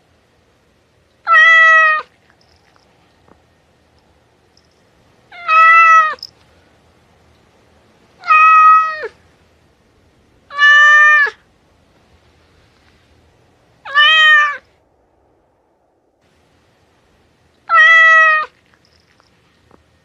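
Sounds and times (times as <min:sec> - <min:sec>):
cat meowing: 0:01.2 - 0:02.1, 0:05.3 - 0:06.2, 0:08.2 - 0:09.2, 0:10.5 - 0:11.4, 0:13.8 - 0:14.6, 0:17.6 - 0:18.6.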